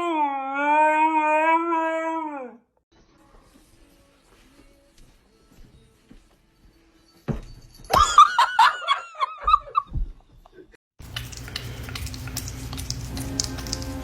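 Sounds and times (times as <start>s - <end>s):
music: 2.9s - 7.9s, 11.6s - 14.0s.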